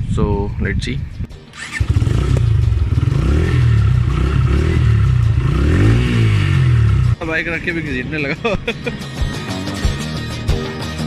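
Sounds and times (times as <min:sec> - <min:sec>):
motorcycle engine revving: 0:01.5 - 0:07.2.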